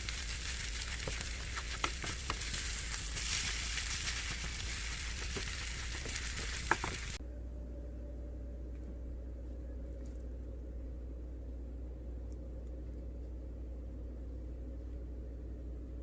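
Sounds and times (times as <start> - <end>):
food sizzling in a pan: 0.0 - 7.2
sharp popping of frying food: 0.0 - 7.2.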